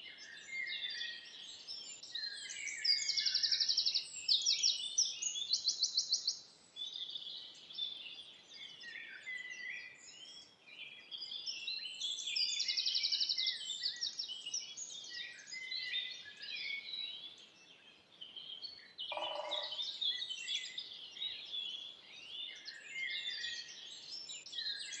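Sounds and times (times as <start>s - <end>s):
songbirds chirping and whistling: 0.0s - 25.0s.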